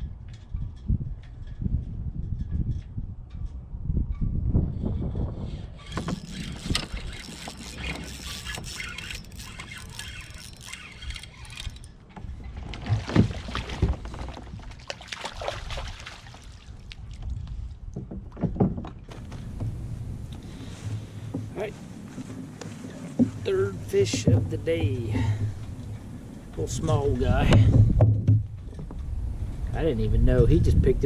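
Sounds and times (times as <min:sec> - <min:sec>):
wind rumble on microphone: 0:00.0 - 0:10.4, 0:11.0 - 0:31.0
kayak handling noise: 0:05.6 - 0:29.7.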